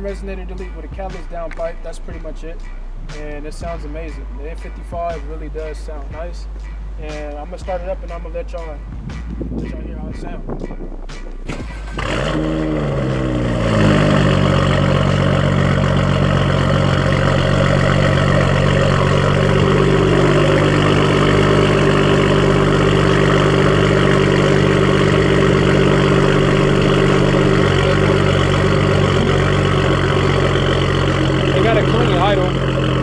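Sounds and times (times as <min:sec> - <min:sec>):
loud car engine idling: 0:09.6 - 0:33.0.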